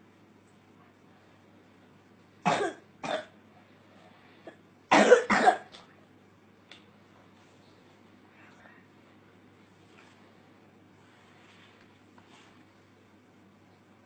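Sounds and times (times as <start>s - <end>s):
young boy coughing: 2.4s - 3.4s, 4.5s - 5.7s.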